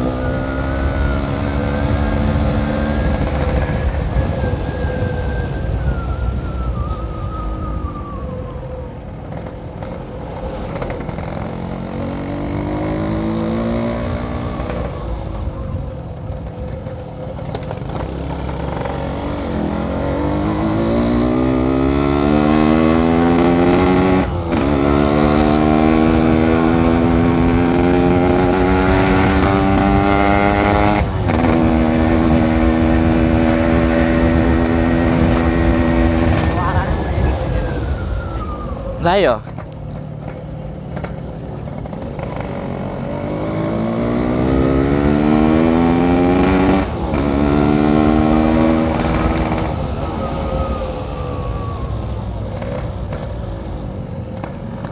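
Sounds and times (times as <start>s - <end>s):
two-stroke motorcycle engine revving: 0.0s - 4.6s, 9.3s - 15.4s, 17.4s - 37.3s, 40.2s - 51.4s.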